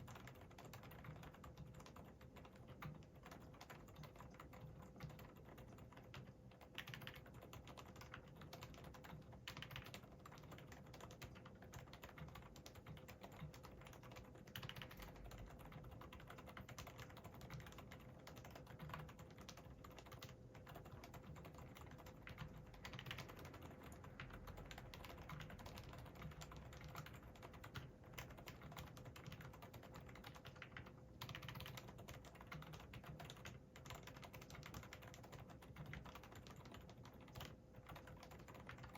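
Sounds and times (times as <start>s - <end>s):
soft keyboard typing: 0.0s - 38.9s.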